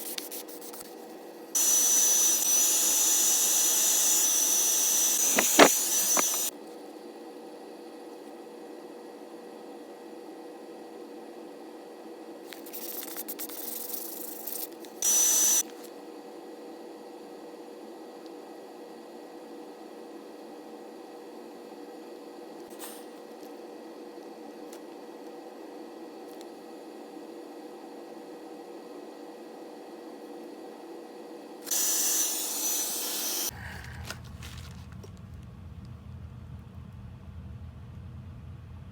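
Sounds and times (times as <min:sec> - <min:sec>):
steady background hum: 0:00.0 - 0:38.9
clicks: 0:05.1 - 0:06.5
aerosol spray can hissing: 0:05.2 - 0:06.5, 0:12.7 - 0:14.7, 0:31.7 - 0:33.5.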